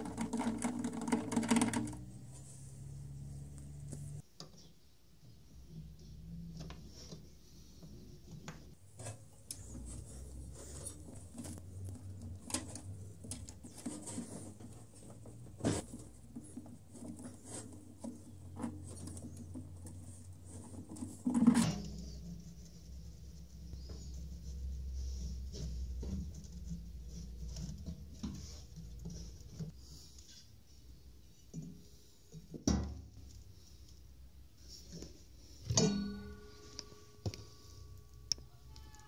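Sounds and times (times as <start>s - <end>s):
tools scratching and scraping: 9.0s - 22.2s.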